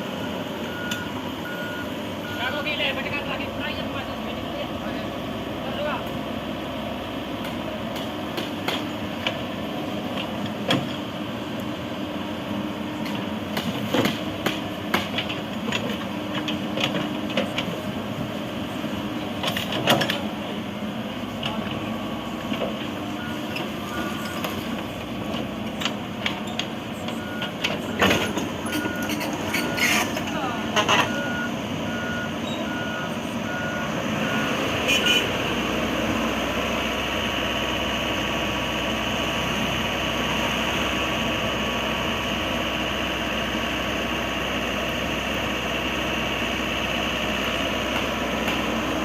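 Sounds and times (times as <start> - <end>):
excavator engine running: 0.0 - 49.0
reversing alarm beeping: 0.1 - 2.8, 23.1 - 24.5, 27.1 - 35.4.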